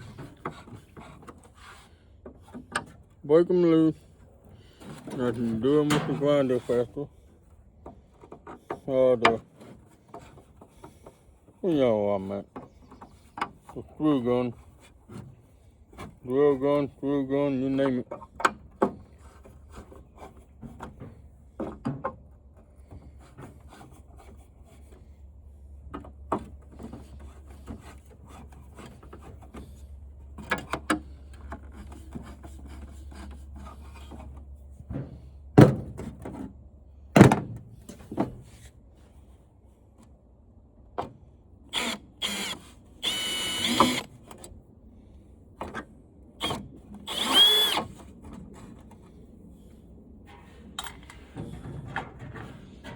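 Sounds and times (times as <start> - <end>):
clicks and knocks from handling parts: 5.9 - 6.2, 50.3 - 52.9
drill driving screws in short bursts: 41.7 - 44.1, 46.4 - 48.0.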